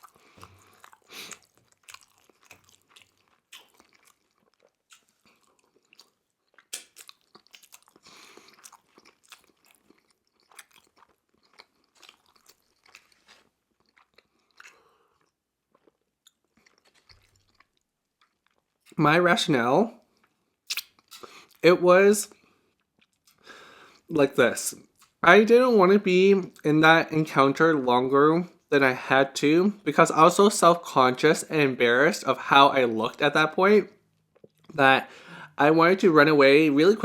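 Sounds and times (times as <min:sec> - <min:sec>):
crunchy chewing of fried chicken: 0:00.0 - 0:19.0, 0:22.3 - 0:24.1, 0:34.0 - 0:34.8.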